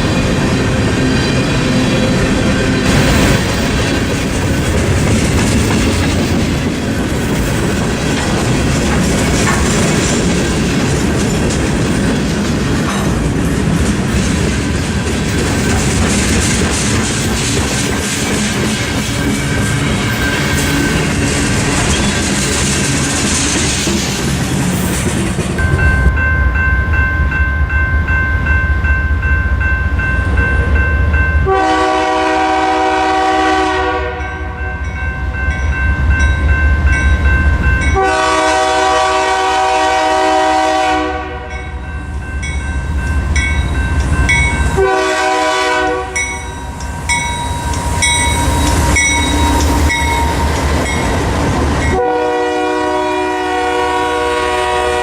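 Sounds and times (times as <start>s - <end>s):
low rumble of train: 0.0s - 55.0s
locomotive air horn blasts: 31.5s - 34.6s, 38.0s - 41.6s, 44.8s - 46.2s, 51.9s - 55.0s.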